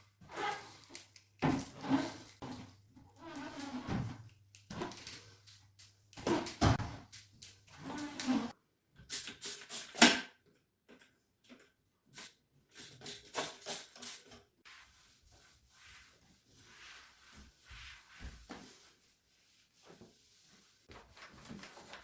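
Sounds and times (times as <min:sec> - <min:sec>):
household objects rubbing and clicking: 0:06.1 - 0:08.6.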